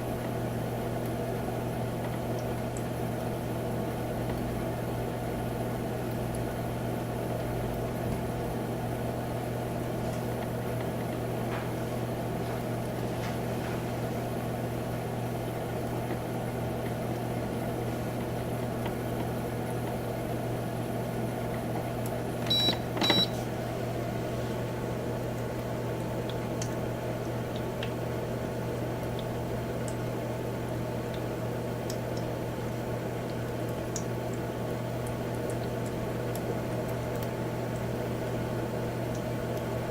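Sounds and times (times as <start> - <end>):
humidifier humming and hissing: 0.0 - 39.9
short high beeps: 22.5 - 23.3.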